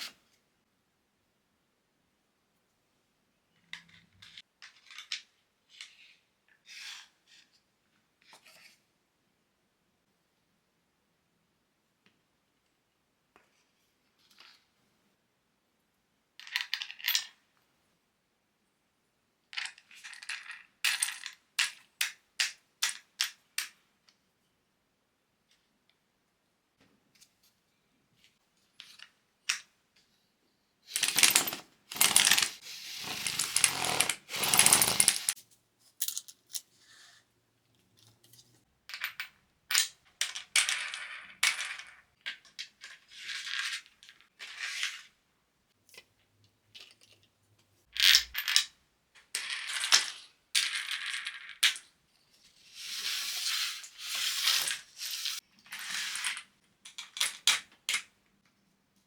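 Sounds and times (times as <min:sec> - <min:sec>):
small parts and tools clattering: 0:03.6 - 0:06.1, 0:30.9 - 0:36.8, 0:45.9 - 0:52.0, 0:52.7 - 0:58.2.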